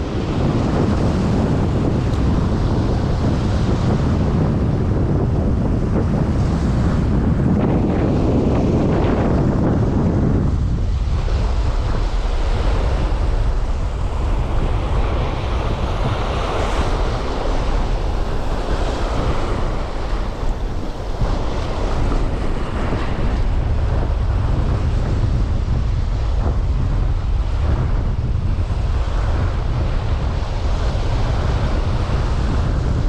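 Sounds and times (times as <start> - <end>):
storm wind buffeting microphone: 0.0 - 33.0.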